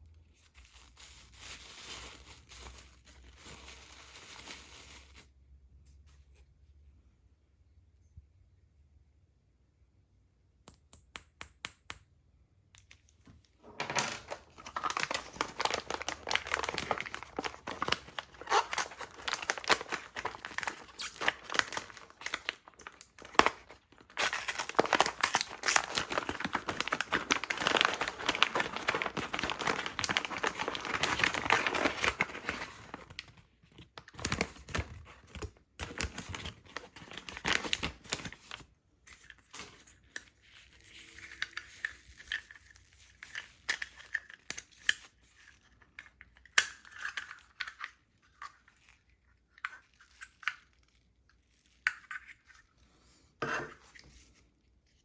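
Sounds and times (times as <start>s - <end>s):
packaging crinkling and tearing: 0.4s - 5.3s, 13.6s - 45.7s
packaging clicks: 13.7s - 33.4s.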